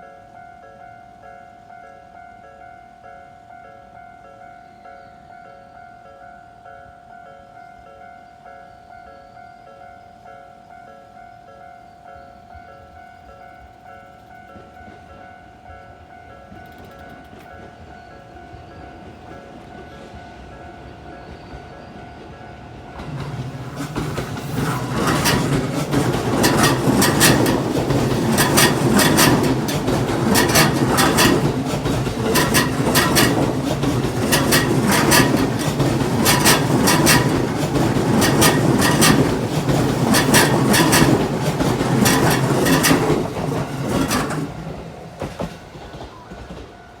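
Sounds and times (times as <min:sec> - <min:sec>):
electric train rumbling: 0:10.1 - 0:47.0
wheel clacks over rail joints: 0:16.5 - 0:17.8, 0:23.0 - 0:46.8.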